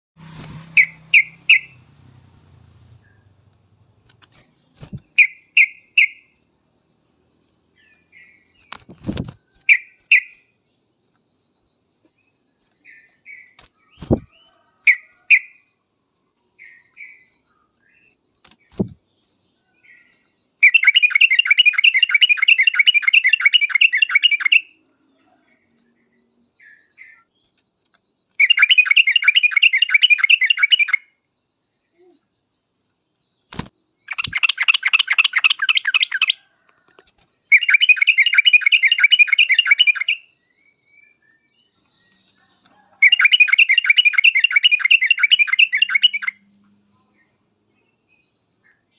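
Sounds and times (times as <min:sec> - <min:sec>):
bird fast trills: 0:00.2 - 0:03.4, 0:04.2 - 0:07.1, 0:07.9 - 0:10.5, 0:12.6 - 0:15.7, 0:19.8 - 0:24.8, 0:28.3 - 0:32.3, 0:33.5 - 0:36.4, 0:37.5 - 0:41.2, 0:42.9 - 0:46.5
bird singing chirpy phrases: 0:00.7 - 0:15.8, 0:16.4 - 0:36.4, 0:37.4 - 0:48.9.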